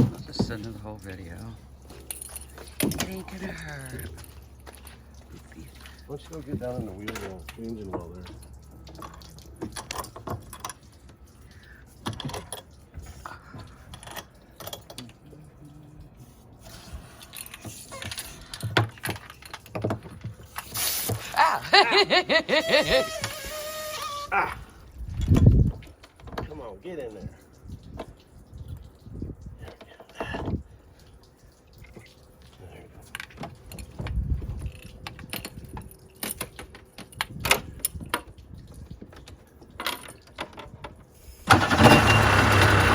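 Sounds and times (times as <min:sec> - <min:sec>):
parts clicking and rattling: 0:00.0 - 0:15.2, 0:16.5 - 0:21.2.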